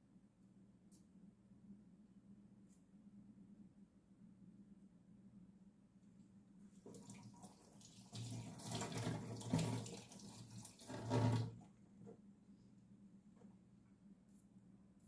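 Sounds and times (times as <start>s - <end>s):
water running from tap: 6.8s - 11.6s.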